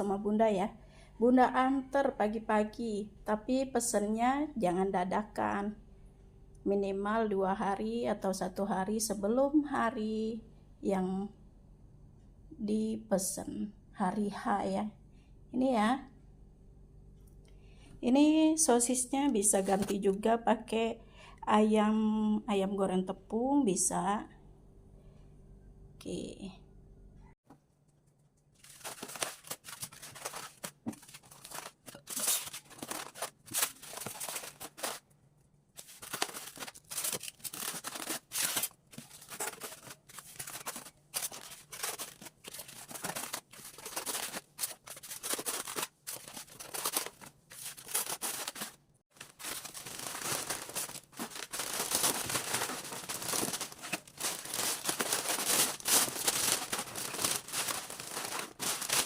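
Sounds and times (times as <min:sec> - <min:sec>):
plastic packaging crinkling: 0:28.6 - 0:35.0, 0:35.8 - 0:59.0.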